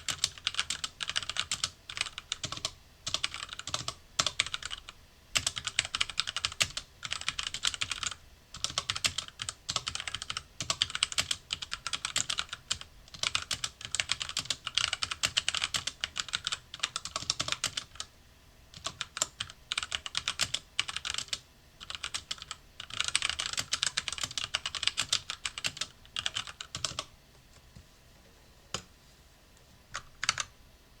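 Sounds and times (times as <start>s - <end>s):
mechanical keyboard typing: 0.0s - 18.1s, 18.8s - 27.1s, 30.0s - 30.5s.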